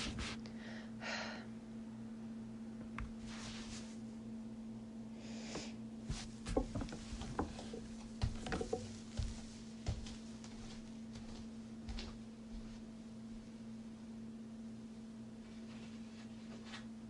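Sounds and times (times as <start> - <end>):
low electrical hum: 0.0 - 17.0
seat creaking and knocking: 6.2 - 9.0.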